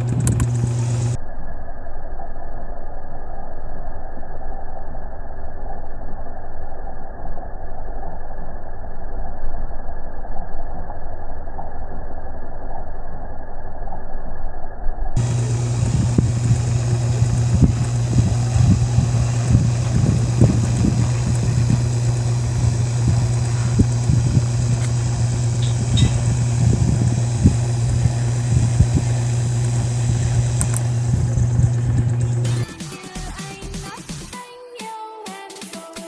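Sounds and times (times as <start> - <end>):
small motor humming: 0.0 - 1.2, 15.2 - 32.7.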